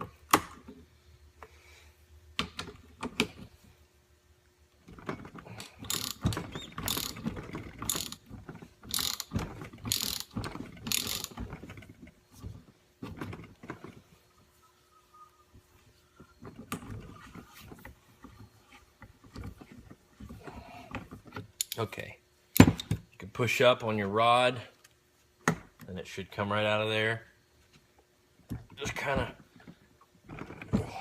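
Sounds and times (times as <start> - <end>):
socket ratchet clicking: 5.8 - 8.2, 8.9 - 9.3, 9.9 - 11.4.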